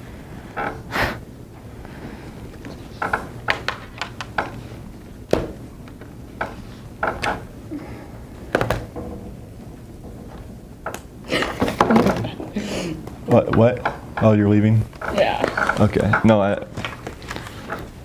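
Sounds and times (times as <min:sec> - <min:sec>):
knocks and thuds: 0:02.9 - 0:17.0.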